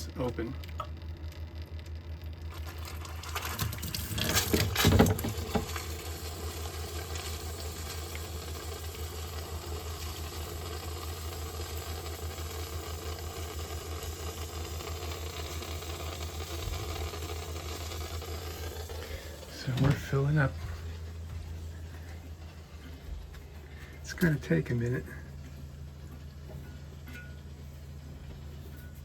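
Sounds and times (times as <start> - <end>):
constant low hum: 0.0 - 29.0
water rushing into tank: 2.5 - 20.5
air sputtering: 13.8 - 25.4.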